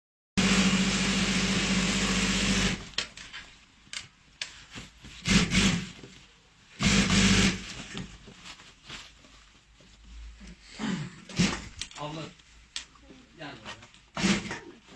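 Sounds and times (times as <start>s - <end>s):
industrial sewing machine running: 0.4s - 2.9s, 5.3s - 5.8s, 6.8s - 7.6s, 14.2s - 14.6s.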